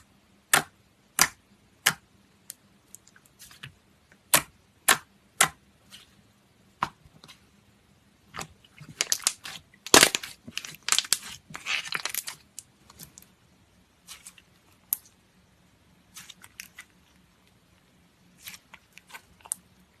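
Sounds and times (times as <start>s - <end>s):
slime popping and crackling: 8.4s - 13.3s.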